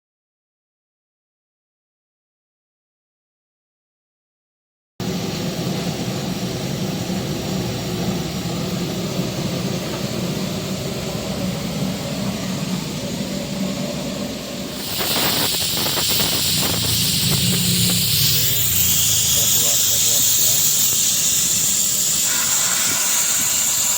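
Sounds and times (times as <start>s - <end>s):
sterilising machine humming: 5.0s - 23.9s
loud hiss with crackling ticks: 14.7s - 23.9s.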